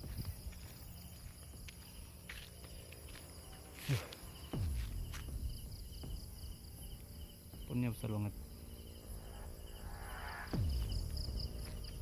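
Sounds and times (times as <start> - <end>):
soft footsteps: 0.0 - 6.5, 10.7 - 12.0
crickets chirping: 0.0 - 12.0.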